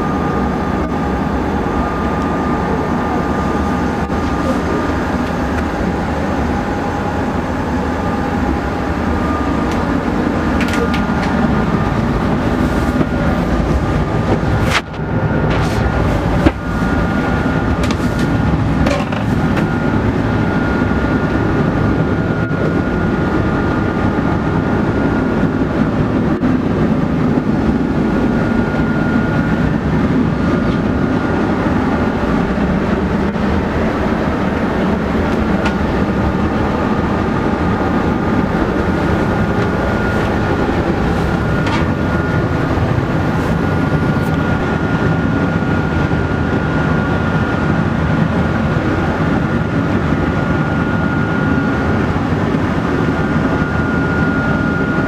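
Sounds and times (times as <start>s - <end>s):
boat engine running: 0.0s - 55.0s
thin steady whine: 0.0s - 55.0s.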